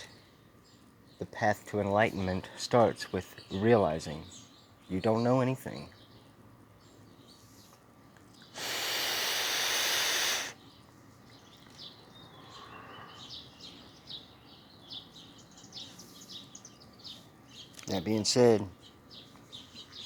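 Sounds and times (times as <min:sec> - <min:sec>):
small birds chirping faintly: 0:00.0 - 0:20.0
loud even hiss: 0:08.5 - 0:10.6.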